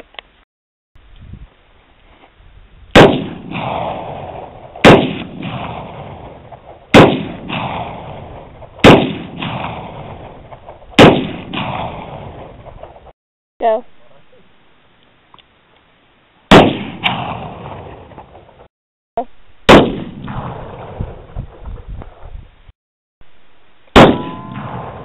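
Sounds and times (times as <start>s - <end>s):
gunshot echo: 3.0s - 13.1s, 16.5s - 18.7s, 19.7s - 22.3s, 23.9s - 25.0s.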